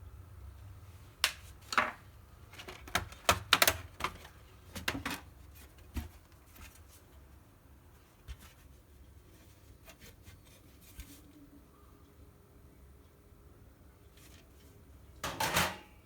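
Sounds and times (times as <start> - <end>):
clicks and taps on plastic casing: 2.6 - 5.2.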